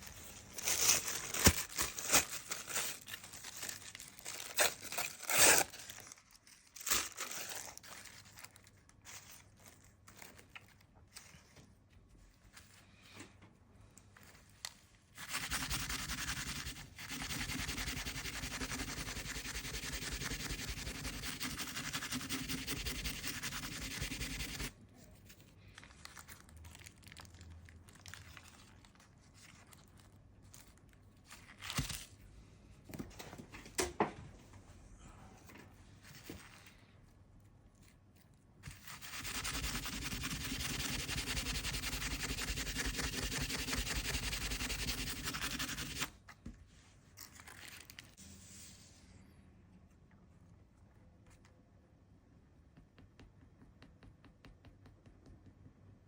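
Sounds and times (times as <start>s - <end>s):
dry rubbing on hard surface: 15.2s - 24.7s, 38.7s - 46.1s.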